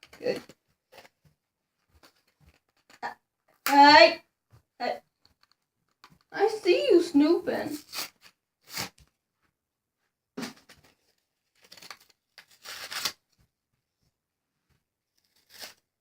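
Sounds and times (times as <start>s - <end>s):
plastic packaging crinkling: 11.5s - 13.2s.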